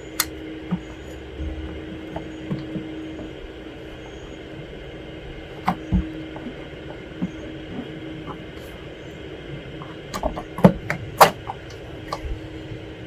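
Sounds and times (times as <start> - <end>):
steady low hum: 0.0 - 13.0
low thump: 1.3 - 3.5.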